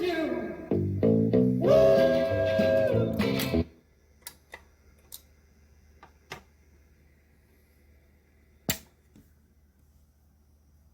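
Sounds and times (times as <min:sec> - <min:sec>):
guitar music on record player: 0:00.4 - 0:03.8.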